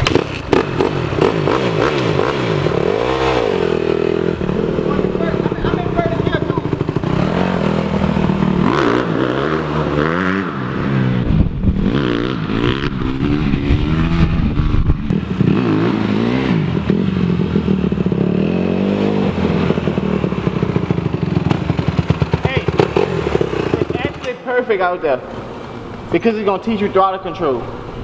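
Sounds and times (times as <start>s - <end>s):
dirt bike engine revving: 0.0s - 26.8s.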